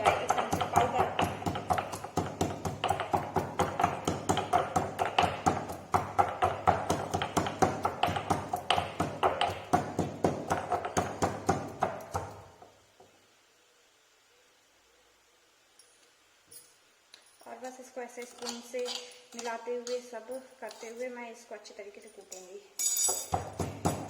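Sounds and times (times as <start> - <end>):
pestle pounding in a mortar: 0.0 - 12.7, 23.1 - 24.0.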